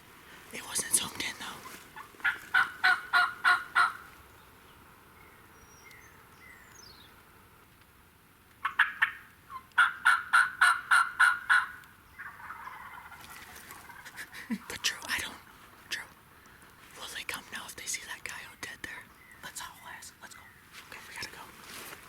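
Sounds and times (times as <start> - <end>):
songbird chirps: 0.5 - 2.6, 4.0 - 7.3, 11.8 - 22.0
turkey yelping: 2.0 - 4.0, 8.6 - 14.1.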